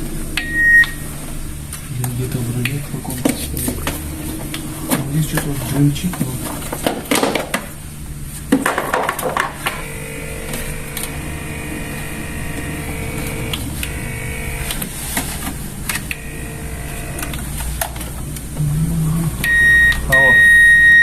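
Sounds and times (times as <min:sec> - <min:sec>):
mechanical buzz: 0:09.2 - 0:21.0.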